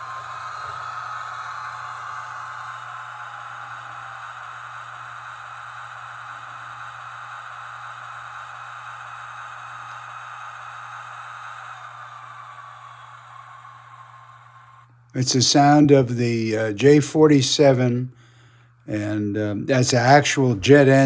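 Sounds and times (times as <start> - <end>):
low steady hum: 14.8 - 21.0.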